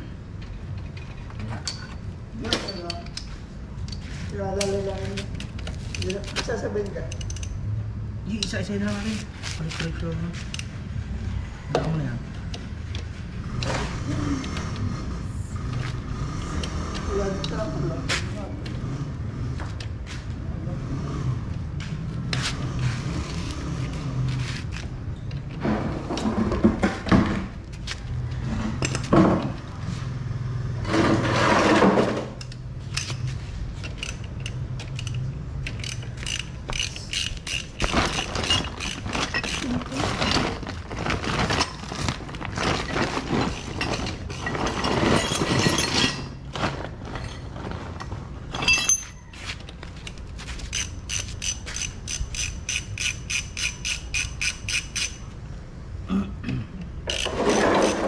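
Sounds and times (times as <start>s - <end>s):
metal tool clatter: 0.5s - 7.6s, 43.3s - 46.5s, 48.5s - 49.4s
ratchet wrench clicking: 2.7s - 7.6s, 32.4s - 39.7s, 50.0s - 55.3s, 57.1s - 58.0s.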